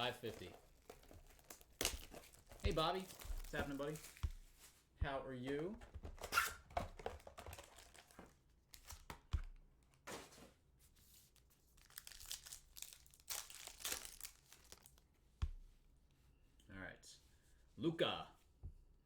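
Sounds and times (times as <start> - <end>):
foil wrapper tearing and crinkling: 0.0 - 4.4, 7.2 - 9.1, 11.7 - 15.0.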